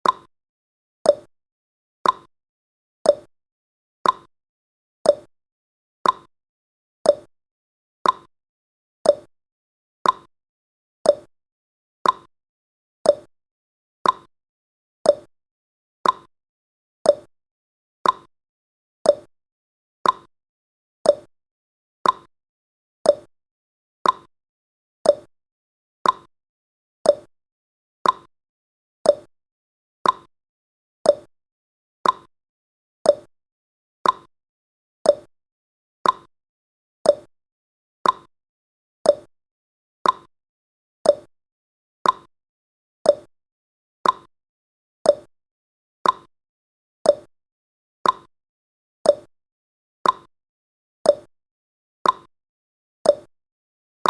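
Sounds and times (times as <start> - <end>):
timer ticking: 0.0 - 0.3, 1.1 - 1.3, 2.0 - 2.3, 3.1 - 3.3, 4.0 - 4.3, 5.1 - 5.3, 6.0 - 6.3, 7.1 - 7.3, 8.0 - 8.3, 9.1 - 9.3, 10.0 - 10.3, 11.1 - 11.3, 12.0 - 12.3, 13.1 - 13.3, 14.0 - 14.3, 15.1 - 15.3, 16.0 - 16.3, 17.1 - 17.3, 18.0 - 18.3, 19.0 - 19.3, 20.0 - 20.3, 21.1 - 21.3, 22.0 - 22.3, 23.0 - 23.3, 24.0 - 24.3, 25.0 - 25.3, 26.0 - 26.3, 27.0 - 27.3, 28.0 - 28.3, 29.0 - 29.3, 30.0 - 30.3, 31.0 - 31.3, 32.0 - 32.3, 33.1 - 33.3, 34.0 - 34.3, 35.1 - 35.3, 36.0 - 36.3, 37.1 - 37.3, 38.0 - 38.3, 39.1 - 39.3, 40.0 - 40.3, 41.0 - 41.3, 42.0 - 42.3, 43.1 - 43.3, 44.0 - 44.3, 45.1 - 45.3, 46.0 - 46.3, 47.1 - 47.3, 48.0 - 48.3, 49.1 - 49.3, 50.0 - 50.3, 51.1 - 51.3, 52.0 - 52.3, 53.1 - 53.3.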